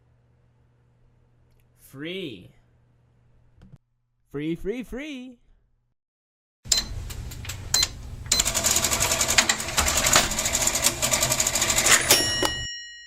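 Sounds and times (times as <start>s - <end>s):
cash register bell ding: 8.3s - 13.0s
cash register keys clattering: 8.4s - 12.7s.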